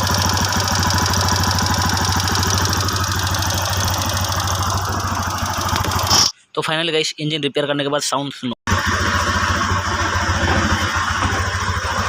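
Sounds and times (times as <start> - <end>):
motorcycle engine idling with ticking: 0.0 - 6.3, 8.7 - 12.0.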